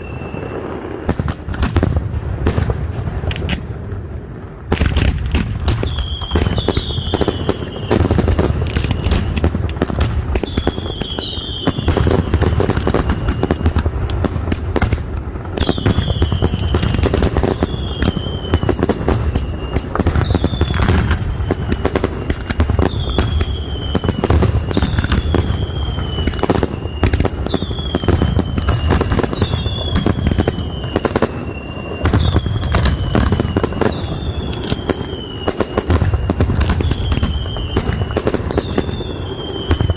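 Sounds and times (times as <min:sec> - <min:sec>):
fireworks bangs and crackling: 0:00.0 - 0:39.9
whistling fireworks shrieking: 0:00.0 - 0:39.9.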